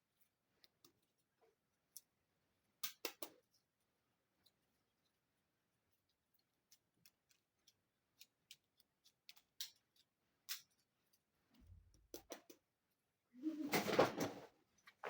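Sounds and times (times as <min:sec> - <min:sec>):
toy pieces clicking and tapping: 0:02.8 - 0:03.5, 0:06.3 - 0:11.3, 0:11.9 - 0:12.7.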